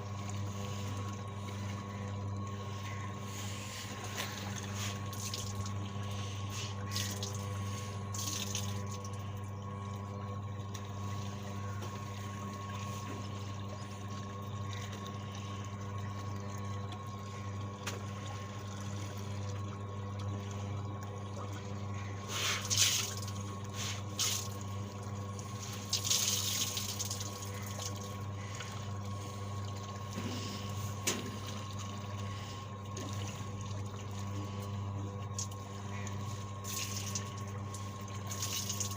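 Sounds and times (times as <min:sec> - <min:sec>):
washing machine motor hum: 0:00.0 - 0:38.9.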